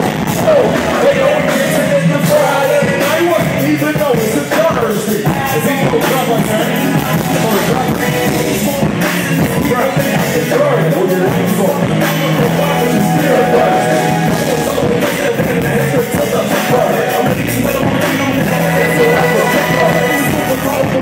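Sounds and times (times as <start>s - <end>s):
loud band music through pa: 0.0s - 21.0s
person singing: 7.0s - 21.0s.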